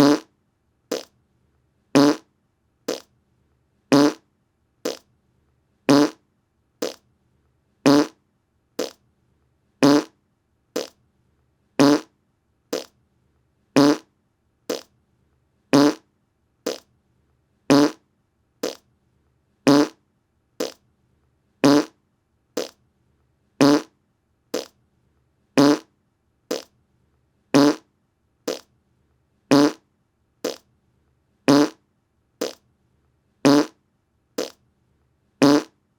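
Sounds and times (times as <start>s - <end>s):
short fart sounds: 0.0s - 0.3s, 0.9s - 1.1s, 2.0s - 2.3s, 2.9s - 3.1s, 3.9s - 4.2s, 4.9s - 5.1s, 5.9s - 6.2s, 6.8s - 7.0s, 7.9s - 8.2s, 8.8s - 9.0s, 9.8s - 10.2s, 10.8s - 11.0s, 11.8s - 12.1s, 12.7s - 13.0s, 13.8s - 14.1s, 14.7s - 14.9s, 15.8s - 16.0s, 16.7s - 16.9s, 17.7s - 18.0s, 18.6s - 18.8s, 19.7s - 20.0s, 20.6s - 20.8s, 21.6s - 22.0s, 23.6s - 23.9s, 24.6s - 24.8s, 25.6s - 25.9s, 26.5s - 26.7s, 27.6s - 27.9s, 28.5s - 28.7s, 29.5s - 29.8s, 30.4s - 30.7s, 31.5s - 31.8s, 32.4s - 32.6s, 33.5s - 33.8s, 34.4s - 34.6s, 35.4s - 35.8s.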